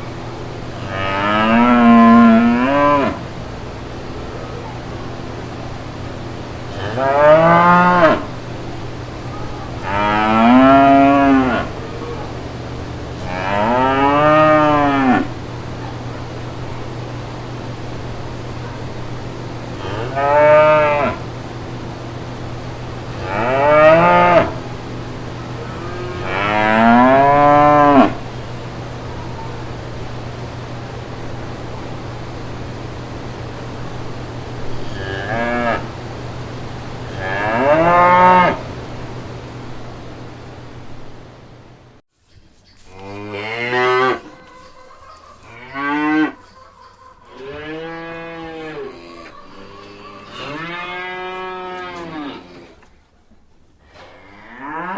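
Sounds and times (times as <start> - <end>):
steady low hum: 0.0 - 54.8
cattle mooing: 0.8 - 3.3, 6.7 - 8.4, 9.4 - 12.4, 13.1 - 15.4, 19.7 - 21.3, 23.1 - 24.7, 25.4 - 28.3, 34.8 - 35.9, 37.1 - 38.7, 42.8 - 52.9, 54.0 - 54.9.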